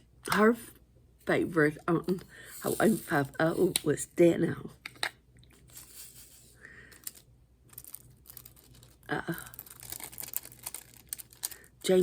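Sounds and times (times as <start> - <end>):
paper rustling: 5.6 - 9.0, 9.6 - 12.0.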